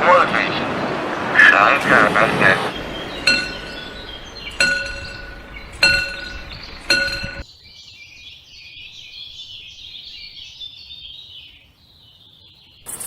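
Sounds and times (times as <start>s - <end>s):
birds chirping: 2.5s - 7.4s
level-crossing bell ringing: 2.7s - 7.4s.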